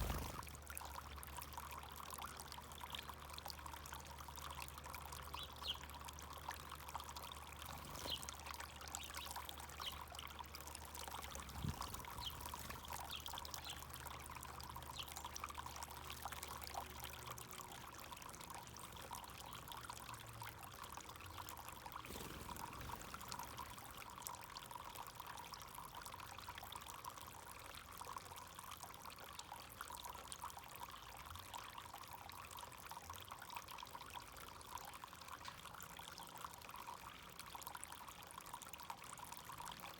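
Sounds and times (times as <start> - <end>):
fountain water pouring and trickling: 0.0 - 39.9.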